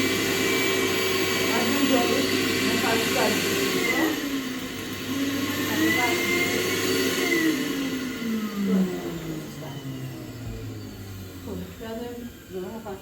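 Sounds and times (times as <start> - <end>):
vacuum cleaner running: 0.0 - 13.0.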